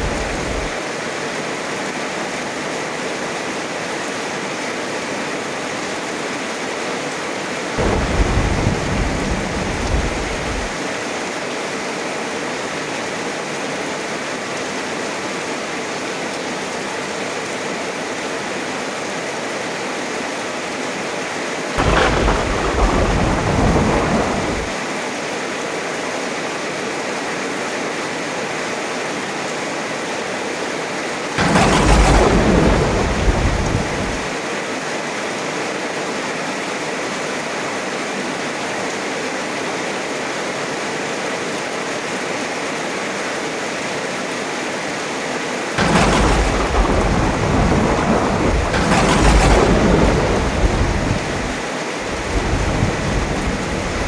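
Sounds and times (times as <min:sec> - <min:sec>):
heavy rain hissing: 0:00.0 - 0:00.8, 0:07.8 - 0:11.0, 0:21.8 - 0:24.9, 0:31.4 - 0:34.4, 0:45.8 - 0:54.0
thunder rumbling: 0:00.0 - 0:00.8, 0:07.8 - 0:10.8, 0:21.8 - 0:24.8, 0:31.4 - 0:34.4, 0:45.8 - 0:54.0.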